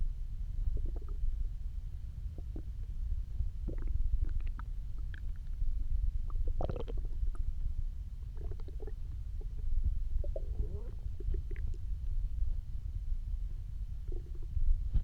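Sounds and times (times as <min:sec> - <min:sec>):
stomach growling: 0:00.6 - 0:01.3, 0:02.3 - 0:02.8, 0:03.6 - 0:05.6, 0:06.3 - 0:07.5, 0:08.3 - 0:12.1, 0:14.0 - 0:15.0.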